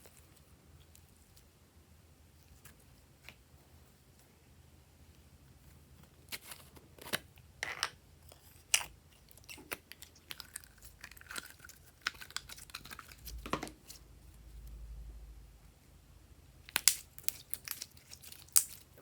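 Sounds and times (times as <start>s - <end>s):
slime crackling and popping: 8.7s - 13.4s, 16.6s - 19.0s.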